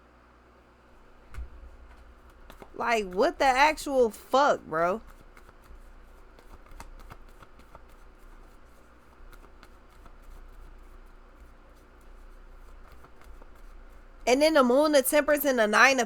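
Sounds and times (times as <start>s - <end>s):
cards shuffling: 1.8s - 3.2s, 5.0s - 14.0s.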